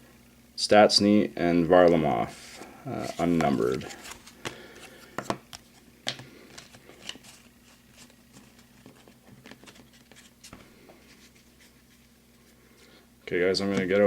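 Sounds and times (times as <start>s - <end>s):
trading cards shuffled and set down: 2.5s - 12.0s.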